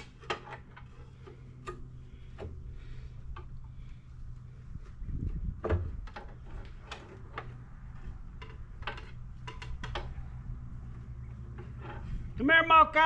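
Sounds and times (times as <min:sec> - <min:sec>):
steady low hum: 0:00.0 - 0:13.0
clicks and knocks of tools: 0:06.0 - 0:10.2.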